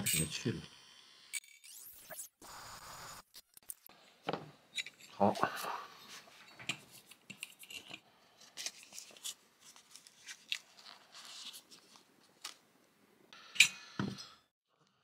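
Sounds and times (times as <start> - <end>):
tools clicking and scraping: 4.7 - 5.2, 6.4 - 9.4.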